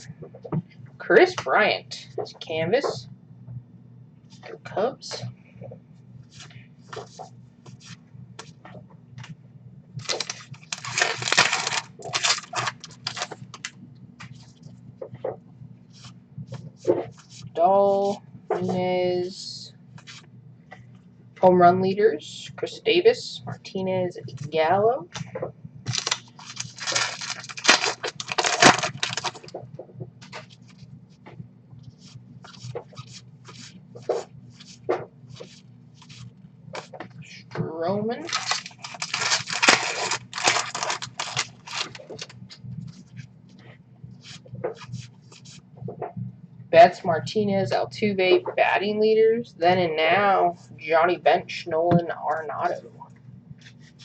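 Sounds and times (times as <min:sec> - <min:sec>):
packaging crinkling and rustling: 0:10.0 - 0:14.4, 0:25.9 - 0:29.6, 0:38.2 - 0:42.6.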